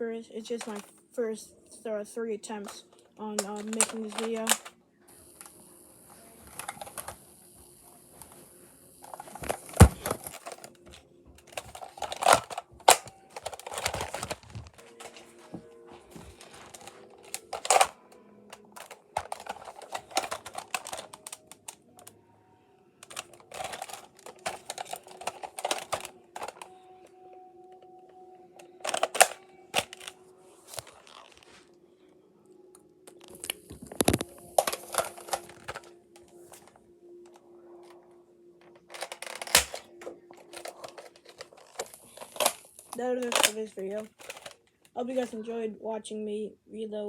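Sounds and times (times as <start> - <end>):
plastic toy rifle clicking: 0.6 - 0.9, 2.6 - 4.7, 6.4 - 7.2, 9.0 - 15.2, 16.2 - 22.1, 23.0 - 26.7, 28.6 - 31.2, 33.1 - 35.9, 38.6 - 45.3
toy rifle firing snaps: 3.4 - 4.7, 16.7 - 18.0, 28.8 - 30.1, 38.9 - 39.9.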